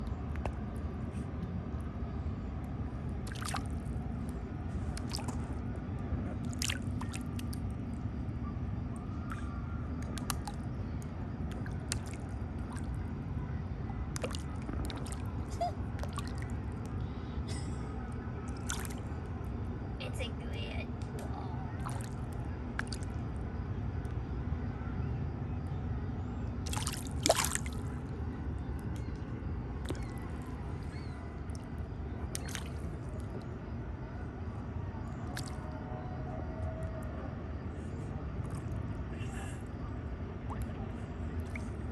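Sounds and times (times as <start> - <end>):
steady low rumble: 0.0 - 41.9
fish splashing and slurping: 3.1 - 8.1, 8.9 - 13.2, 14.0 - 19.3, 21.2 - 23.7, 26.6 - 33.8, 35.0 - 35.9, 37.5 - 41.9
fish splashing at water surface: 3.2 - 3.8, 18.5 - 19.0, 21.8 - 23.2, 26.7 - 27.9, 32.3 - 33.2, 35.3 - 35.7.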